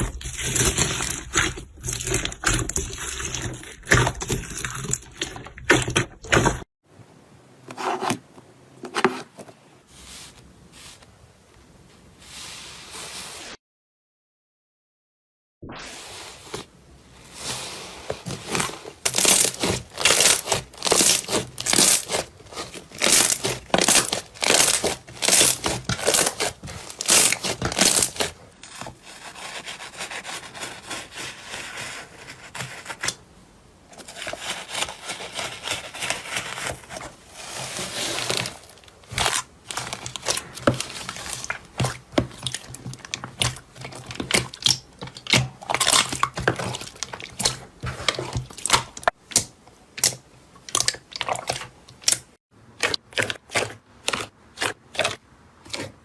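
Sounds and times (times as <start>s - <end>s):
slime crackling and popping: 19.0s - 28.3s.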